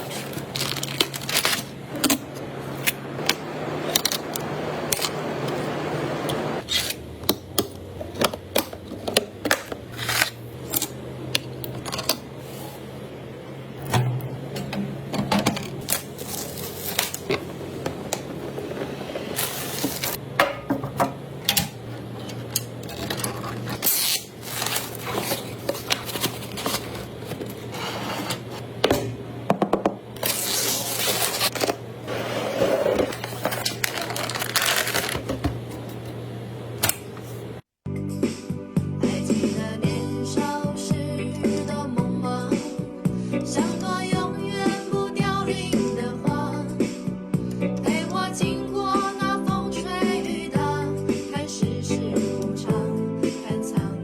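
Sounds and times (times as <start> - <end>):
clicks and scrapes of computer parts: 0.0 - 12.2, 19.3 - 29.1, 32.4 - 36.2
low steady hum: 0.0 - 37.6.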